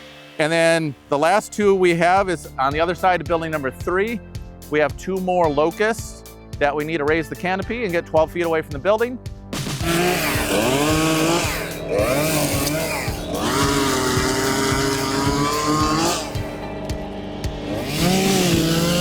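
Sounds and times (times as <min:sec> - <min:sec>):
background music with steady beat: 0:00.0 - 0:19.0
chainsaw engine revving: 0:09.6 - 0:19.0.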